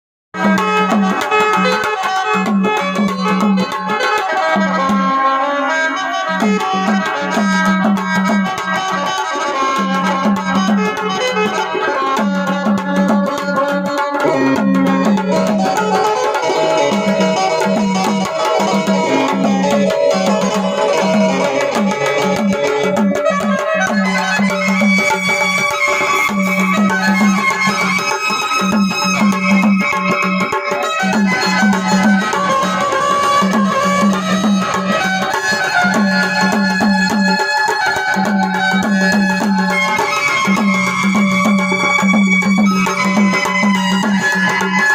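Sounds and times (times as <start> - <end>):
drum beat: 0.4 - 5.2, 6.5 - 44.9
sustained melody lines: 13.4 - 44.9.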